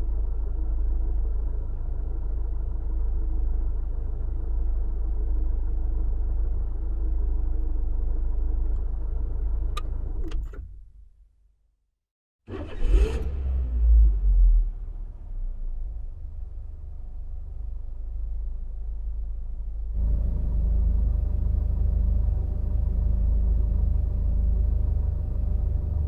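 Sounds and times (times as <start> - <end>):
car engine idling: 0.0 - 11.1, 14.7 - 26.0.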